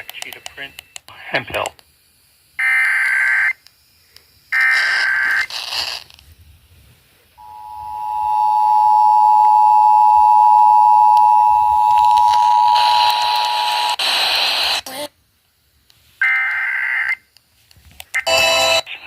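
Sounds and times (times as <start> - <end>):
screechy digital data burst: 2.6 - 3.6, 4.4 - 6.2, 11.6 - 15.1
two-tone attention signal: 7.4 - 13.1, 18.3 - 18.9.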